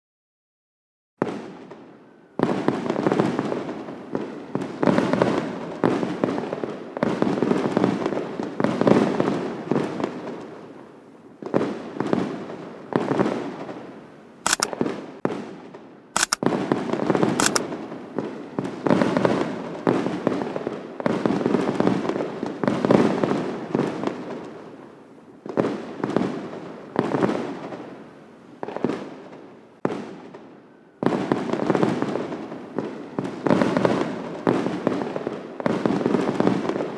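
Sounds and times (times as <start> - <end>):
sharp thin cracks: 14.5 - 14.8, 16.2 - 16.4, 17.4 - 17.7
fireworks bursting: 16.2 - 24.5.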